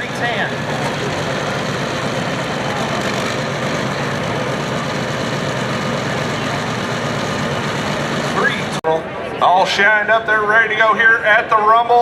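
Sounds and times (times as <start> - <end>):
diesel tractor engine idling: 0.0 - 8.9.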